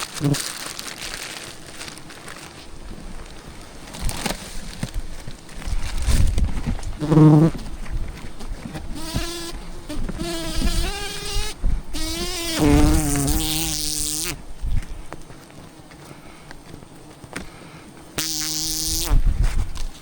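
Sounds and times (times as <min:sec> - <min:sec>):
bees buzzing: 0:08.9 - 0:14.4, 0:16.2 - 0:19.2.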